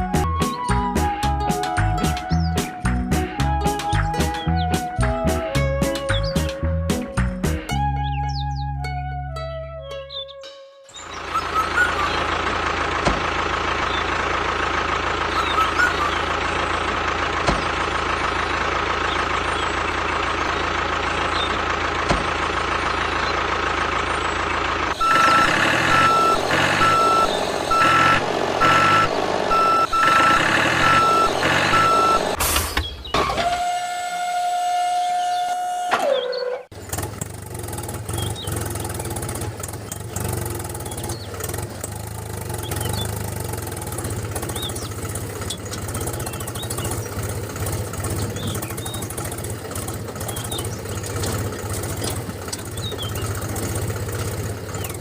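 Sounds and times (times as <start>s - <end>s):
mechanical running whine: 24.4s - 32.4s
reversing alarm beeping: 25.0s - 32.4s
steady tone dropping in pitch: 25.0s - 32.4s.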